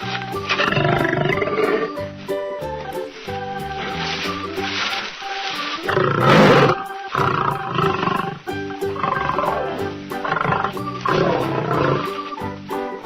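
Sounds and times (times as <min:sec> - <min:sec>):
light background music: 0:00.0 - 0:13.0
lion roaring: 0:00.6 - 0:01.9, 0:05.9 - 0:08.4, 0:09.0 - 0:12.1.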